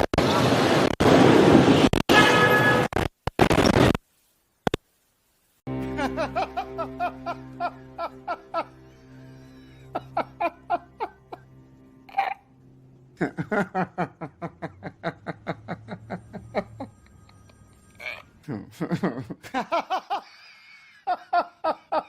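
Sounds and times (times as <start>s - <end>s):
rhythmic laughter: 5.7s - 11.6s, 13.2s - 17.5s, 18.5s - 20.4s
background music: 5.7s - 17.8s.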